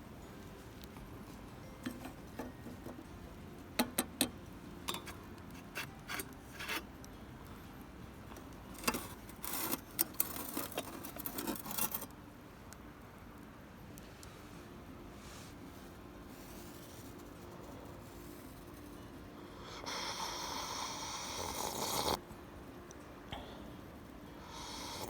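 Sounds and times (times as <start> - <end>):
rubbing and scraping handling noise: 4.9 - 6.9, 8.8 - 12.1, 15.1 - 19.3.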